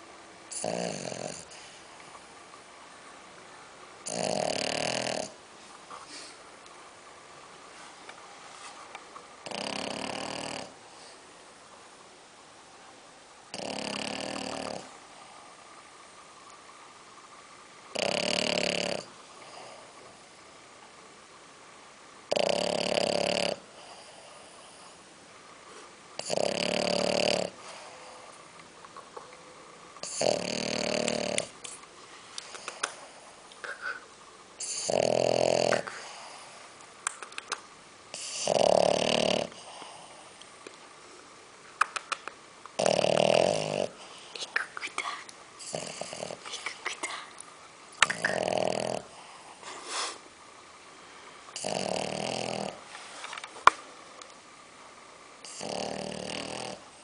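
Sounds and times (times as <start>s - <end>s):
pet snoring: 0.5s - 1.8s, 4.0s - 5.4s, 9.4s - 10.8s, 13.5s - 15.0s, 17.9s - 20.0s, 22.3s - 25.0s, 26.2s - 28.3s, 30.0s - 31.7s, 34.6s - 36.6s, 38.1s - 40.2s, 42.8s - 44.6s, 45.6s - 47.1s, 48.0s - 50.1s, 51.6s - 52.9s, 55.4s - 57.0s
quiet breathing: 10.8s - 11.3s, 27.6s - 28.6s, 35.8s - 36.8s, 39.5s - 41.4s, 43.9s - 47.4s, 49.0s - 50.3s.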